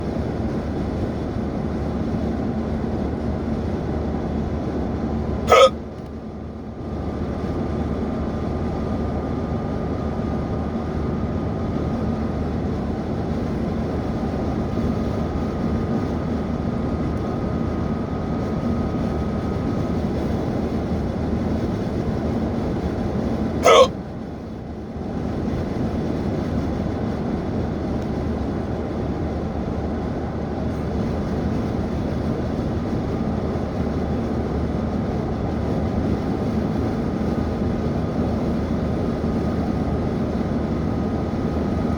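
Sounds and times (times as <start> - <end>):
steady background hum: 0.0 - 41.9
person hiccuping: 5.5 - 5.8, 23.6 - 23.9.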